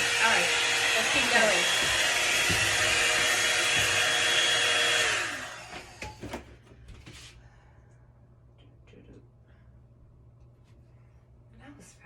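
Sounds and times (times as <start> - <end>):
hot air brush blowing: 0.0 - 6.2.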